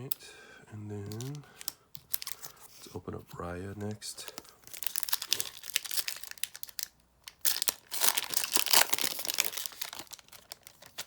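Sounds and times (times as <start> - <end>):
foil wrapper crinkling: 1.1 - 2.6, 4.3 - 11.0.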